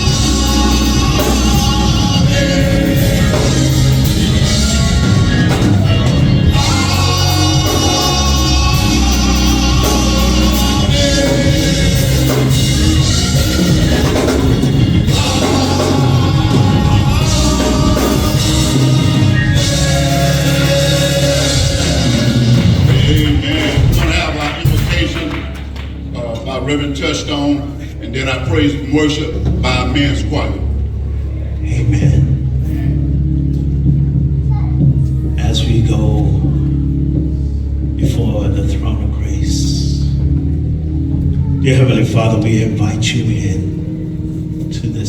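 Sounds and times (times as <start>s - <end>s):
band with drum kit: 0.0s - 26.1s
gospel singing: 0.0s - 33.7s, 35.4s - 45.0s.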